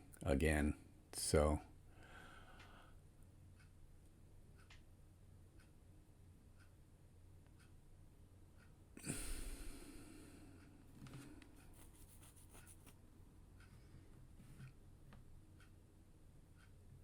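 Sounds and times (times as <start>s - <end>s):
clock ticking: 3.3s - 8.9s, 14.6s - 17.0s
small light clicks and scrapes: 10.9s - 13.0s, 13.6s - 15.8s.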